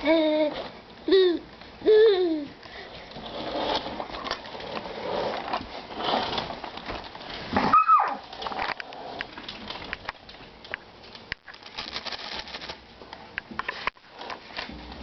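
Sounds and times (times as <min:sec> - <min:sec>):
baby squealing: 0:07.7 - 0:08.2
plastic package crinkling: 0:11.4 - 0:12.8.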